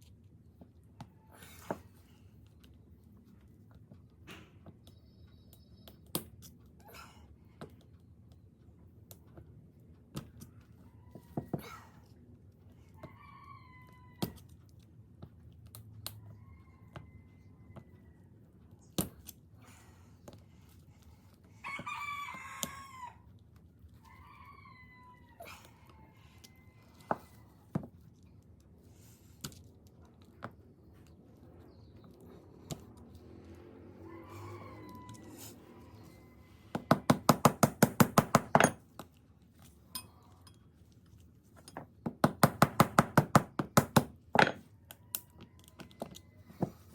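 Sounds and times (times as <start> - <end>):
rooster crowing: 13.0 - 14.4, 16.2 - 18.3, 21.6 - 23.3, 24.0 - 27.6, 31.6 - 37.0, 44.7 - 46.9.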